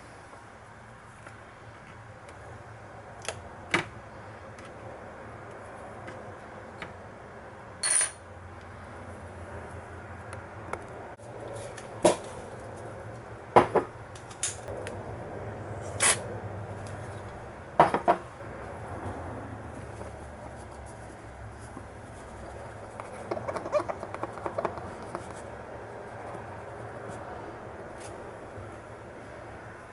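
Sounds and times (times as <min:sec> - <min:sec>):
steady low hum: 0:00.0 - 0:29.9.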